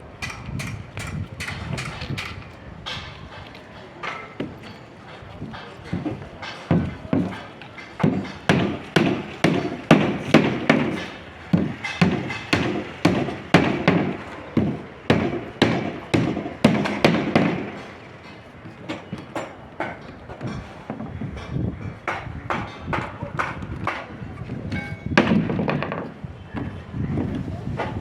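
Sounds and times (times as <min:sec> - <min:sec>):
repeated thuds: 0:05.4 - 0:19.4.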